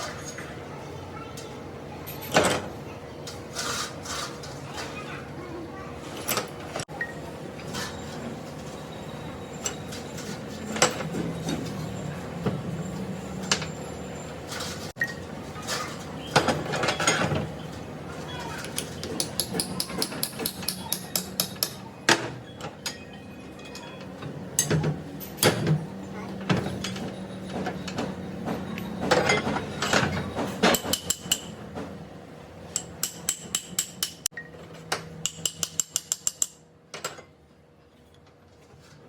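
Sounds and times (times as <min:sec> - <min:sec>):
metal tools clinking and knocking: 0:26.4 - 0:28.2.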